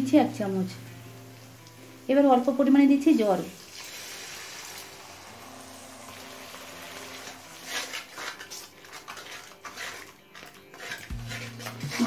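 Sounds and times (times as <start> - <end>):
spices sizzling in hot oil: 0.0 - 12.0
spatula stirring and scraping: 5.4 - 12.0.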